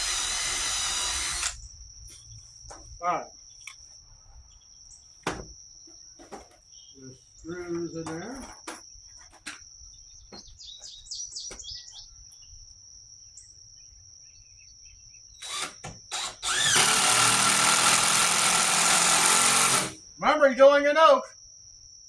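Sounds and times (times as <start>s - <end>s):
cordless drill boring into wood: 0.0s - 1.6s, 15.4s - 20.0s
cricket trilling: 0.0s - 22.0s
bird chirps: 9.9s - 12.6s.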